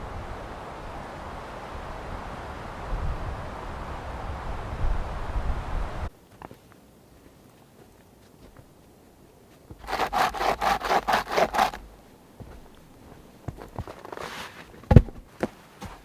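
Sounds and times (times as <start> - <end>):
hand saw cutting wood: 9.8 - 12.6.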